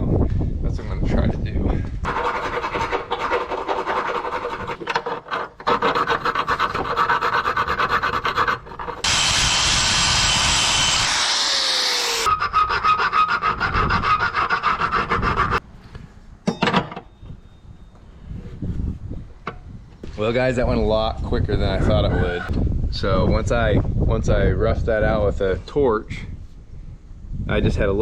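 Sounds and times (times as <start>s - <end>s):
file rasping on steel: 2.1s - 15.6s.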